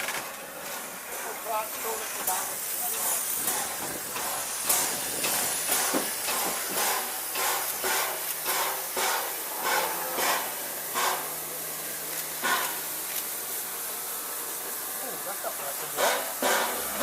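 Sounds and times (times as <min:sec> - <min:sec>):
steam locomotive hissing: 0:00.0 - 0:17.0
sharp knocks of train: 0:01.7 - 0:11.3, 0:12.4 - 0:12.9, 0:15.9 - 0:17.0.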